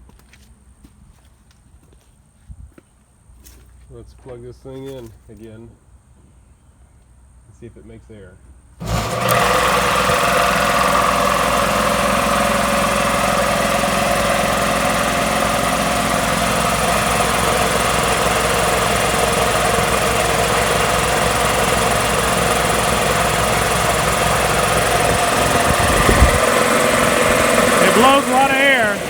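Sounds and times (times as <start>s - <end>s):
air blowing out: 8.8s - 29.0s
electric air compressor running: 8.8s - 29.0s.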